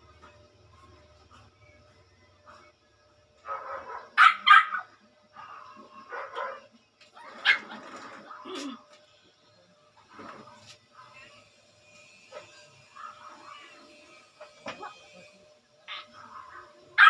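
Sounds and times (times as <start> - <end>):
dog barking: 3.4 - 7.8.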